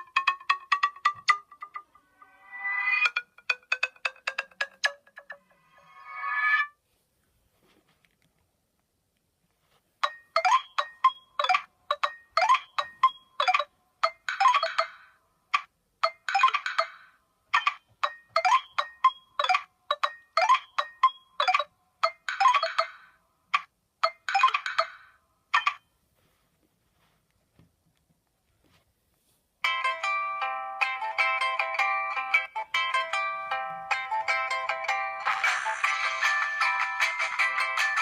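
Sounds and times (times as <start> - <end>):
phone ringtone melody: 10.0 - 15.2, 16.0 - 23.2, 24.0 - 25.8, 29.6 - 38.0.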